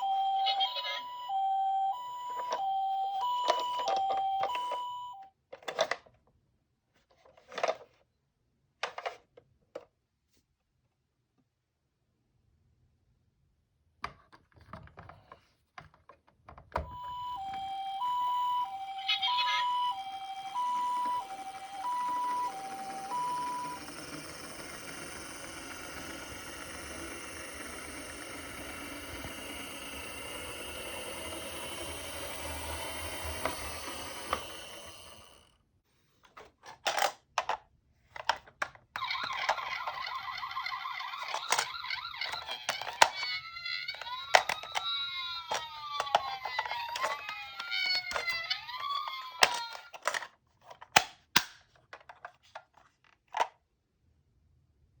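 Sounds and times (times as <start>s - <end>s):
toy two-tone siren: 0.0s - 5.3s, 16.8s - 35.4s, 39.0s - 50.2s
toy wheels rolling: 16.9s - 35.5s, 39.0s - 50.3s
wavering sound: 17.0s - 35.4s.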